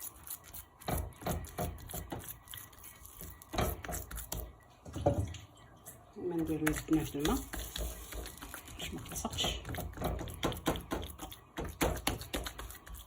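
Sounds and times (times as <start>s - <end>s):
hands patting soft dough: 6.4s - 13.0s.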